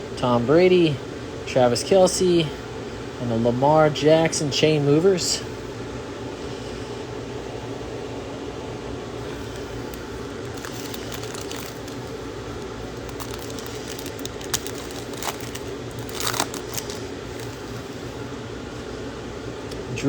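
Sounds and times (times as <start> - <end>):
steady low hum: 0.0 - 20.0
plastic wrapper crinkling: 9.2 - 17.9
wrapper tearing open: 9.4 - 17.8.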